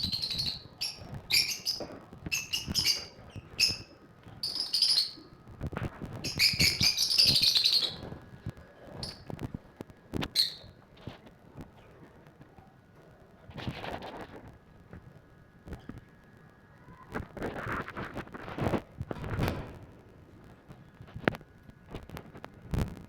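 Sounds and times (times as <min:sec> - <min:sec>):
lovebirds chirping shrilly: 0:00.0 - 0:05.3, 0:06.2 - 0:08.1, 0:10.4 - 0:10.7.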